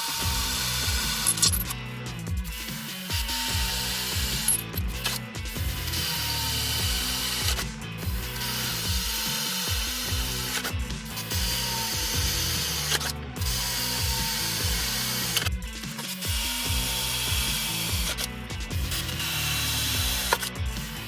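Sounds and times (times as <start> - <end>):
background music: 0.0 - 21.0
power tool on steel: 0.0 - 21.0.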